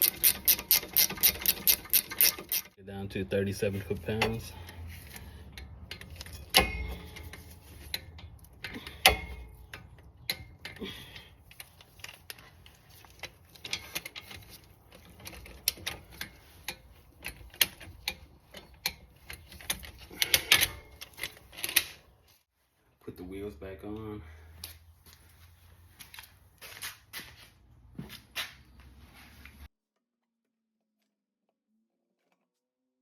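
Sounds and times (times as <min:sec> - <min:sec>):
torque wrench clicking: 0:00.0 - 0:02.7.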